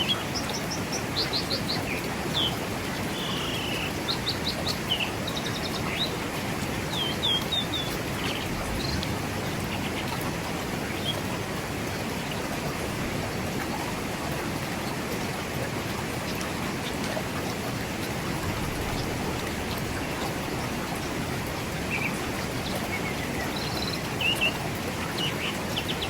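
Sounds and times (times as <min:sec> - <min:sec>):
birds chirping: 0:00.0 - 0:11.3, 0:18.7 - 0:26.0
river flowing: 0:00.0 - 0:26.0.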